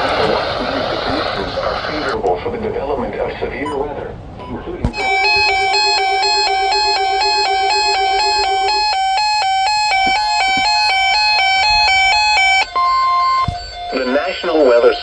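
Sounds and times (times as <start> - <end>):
electronic alert chime: 4.9 - 15.0.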